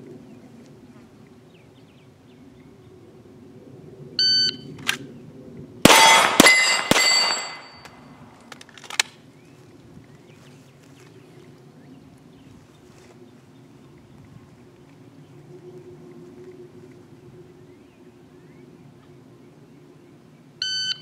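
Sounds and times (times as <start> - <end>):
shot timer beep: 4.2 - 4.6
pistol shots: 5.9 - 8.0
steel targets ringing: 5.9 - 8.3.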